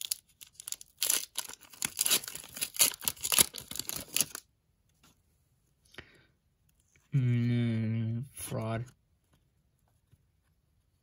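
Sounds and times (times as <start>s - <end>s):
card pack wrapper tearing and crinkling: 0.0s - 4.5s.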